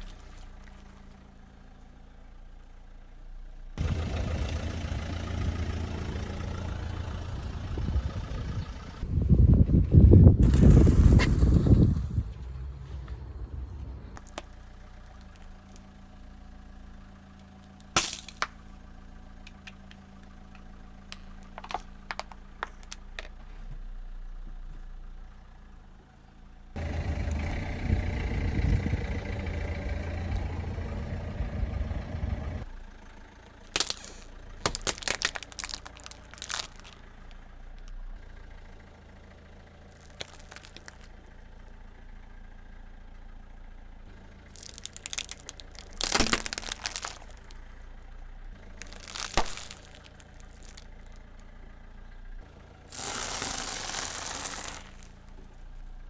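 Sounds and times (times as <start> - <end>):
car engine running: 0.2 - 56.0
objects crunching under tyres: 10.4 - 15.9, 26.8 - 32.6, 33.6 - 38.0, 39.8 - 41.3, 44.2 - 51.6, 52.4 - 56.0.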